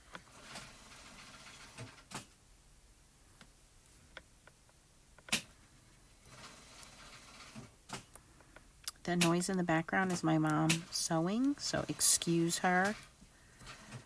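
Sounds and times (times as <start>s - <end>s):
faint sewing machine: 0.2s - 2.2s, 6.2s - 7.8s.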